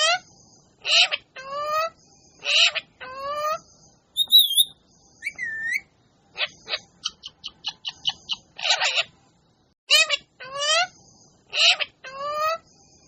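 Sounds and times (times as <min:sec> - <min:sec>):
parrot squawking: 0:04.2 - 0:05.8
parrot whistling: 0:04.2 - 0:05.8
parrot chirping: 0:04.2 - 0:09.1.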